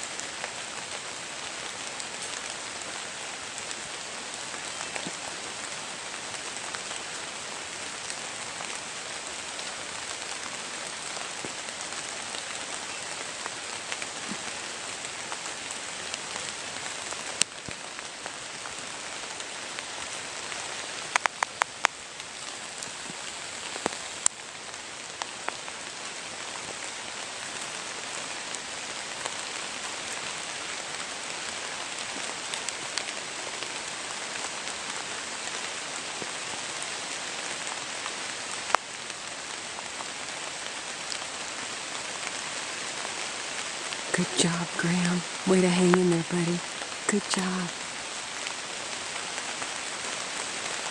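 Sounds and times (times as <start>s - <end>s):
steady rain falling: 0.0s - 50.9s.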